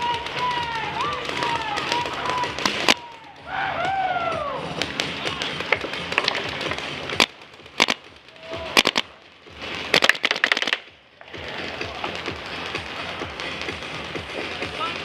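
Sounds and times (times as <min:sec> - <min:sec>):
paintball markers firing: 0:00.0 - 0:03.5, 0:04.7 - 0:10.9.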